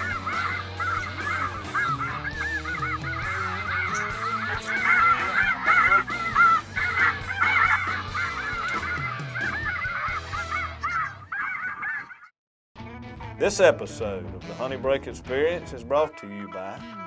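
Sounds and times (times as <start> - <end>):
music: 0.0 - 11.2, 12.8 - 17.0
geese honking: 0.0 - 12.3.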